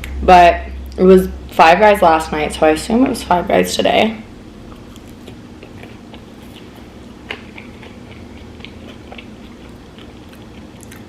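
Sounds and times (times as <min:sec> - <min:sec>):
person chewing crunchy food: 0:04.6 - 0:11.0.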